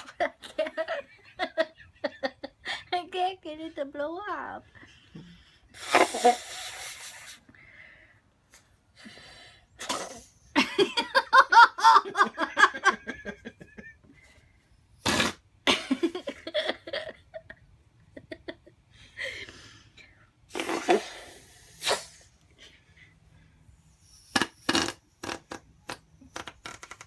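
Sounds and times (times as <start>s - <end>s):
whoopie cushion fart noise: 5.8s - 7.4s, 9.8s - 10.3s, 15.0s - 15.4s, 20.5s - 22.3s, 24.3s - 27.0s.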